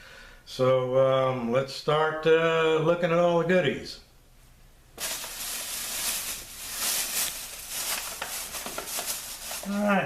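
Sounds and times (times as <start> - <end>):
packaging rustling and crinkling: 5.0 - 10.0.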